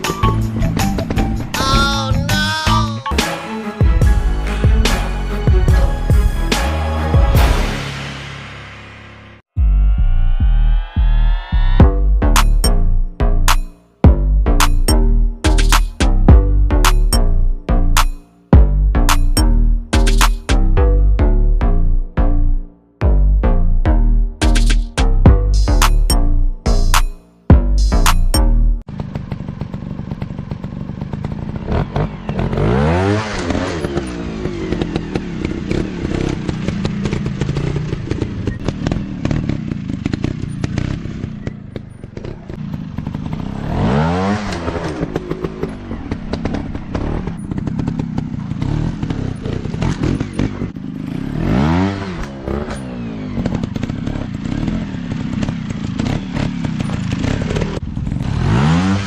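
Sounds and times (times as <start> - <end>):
dirt bike engines revving: 29.0 - 59.0.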